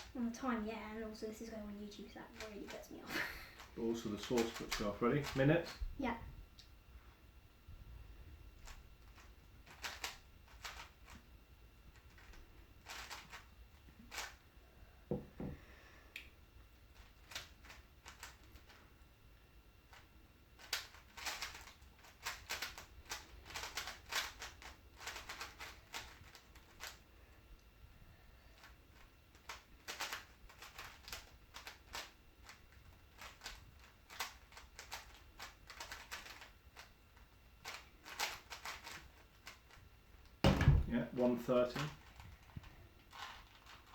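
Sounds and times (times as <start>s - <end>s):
puzzle cube clicking: 4.3s - 5.4s, 8.6s - 11.2s, 12.0s - 13.4s, 20.6s - 27.0s, 29.4s - 32.6s, 33.2s - 36.9s, 37.6s - 39.6s.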